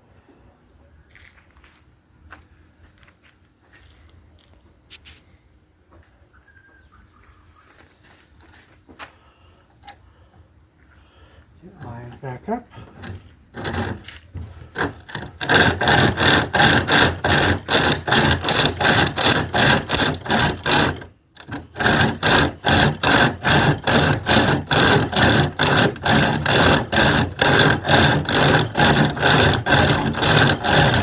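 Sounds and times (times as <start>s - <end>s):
hand chain saw rasping: 11.7s - 31.0s.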